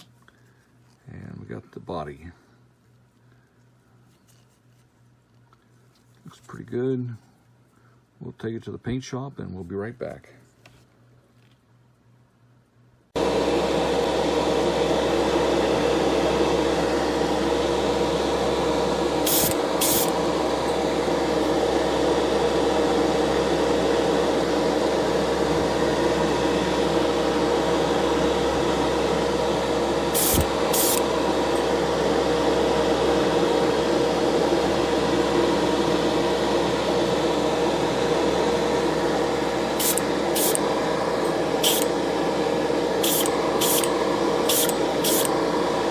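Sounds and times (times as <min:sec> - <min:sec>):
spray equipment hissing: 0:19.2 - 0:20.2, 0:30.1 - 0:31.1, 0:39.8 - 0:40.7, 0:41.6 - 0:42.0, 0:43.0 - 0:45.4
short high spray bursts: 0:19.3 - 0:20.1, 0:30.2 - 0:31.0, 0:39.8 - 0:40.6, 0:41.6 - 0:41.9, 0:43.0 - 0:43.9, 0:44.5 - 0:45.3.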